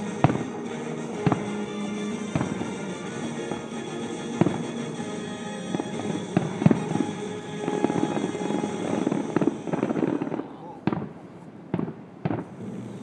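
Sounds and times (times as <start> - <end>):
music playing: 0.0 - 10.4
fireworks bangs: 0.0 - 13.0.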